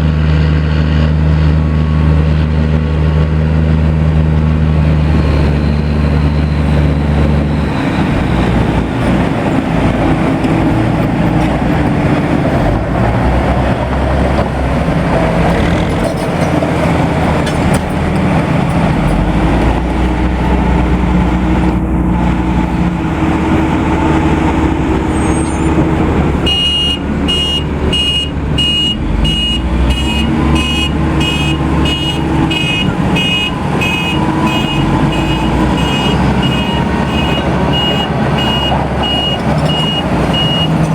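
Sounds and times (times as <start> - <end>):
truck diesel engine running: 0.0 - 40.9
reversing alarm beeping: 4.9 - 9.8, 26.5 - 40.8.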